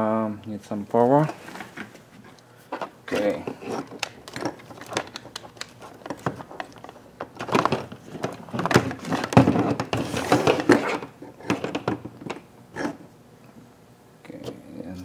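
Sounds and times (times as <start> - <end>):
scraping and rustling: 1.1 - 11.8
objects clicking and clunking: 1.2 - 13.0.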